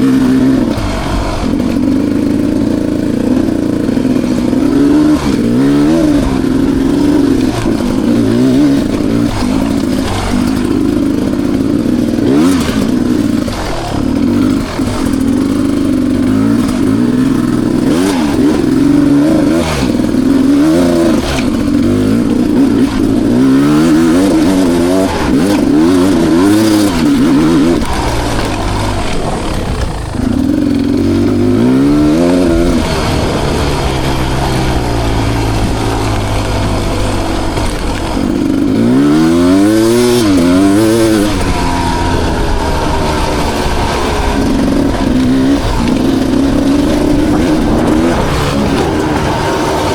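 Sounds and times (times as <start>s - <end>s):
dirt bike engine revving: 0.0s - 49.9s.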